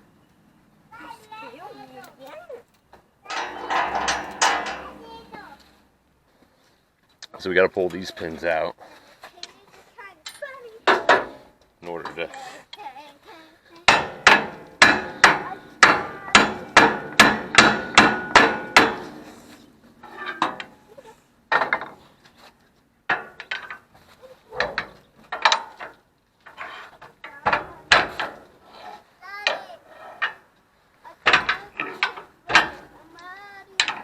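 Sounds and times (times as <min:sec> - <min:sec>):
hammer striking metal pin: 0:03.3 - 0:05.4, 0:13.9 - 0:19.3.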